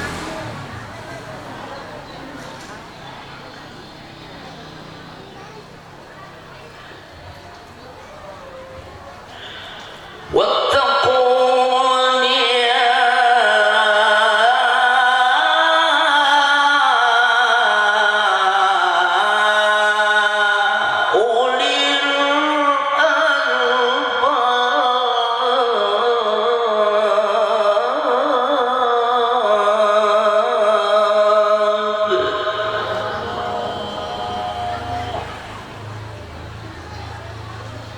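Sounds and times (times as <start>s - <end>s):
man reciting in melodic style: 9.3s - 36.6s.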